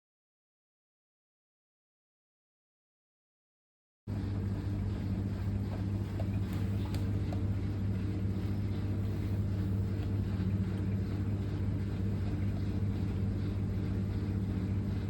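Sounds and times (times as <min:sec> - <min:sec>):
low mechanical hum: 0:04.1 - 0:15.0.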